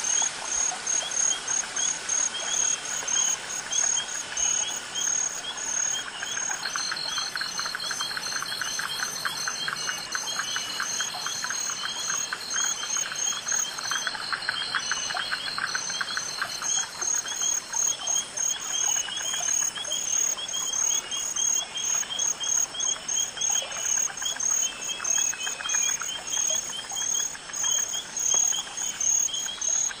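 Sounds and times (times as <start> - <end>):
crickets chirping: 0.0 - 30.0.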